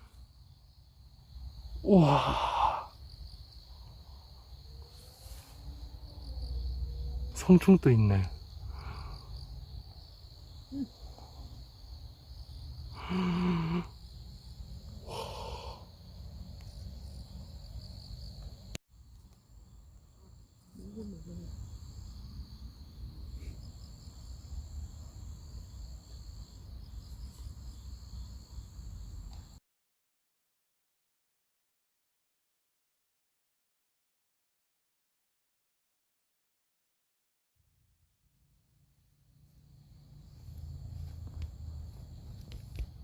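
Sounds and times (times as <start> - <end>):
insects chirring: 0.0 - 29.6, 39.0 - 43.0
breathy sound: 1.9 - 3.0, 12.9 - 14.0, 15.0 - 15.9.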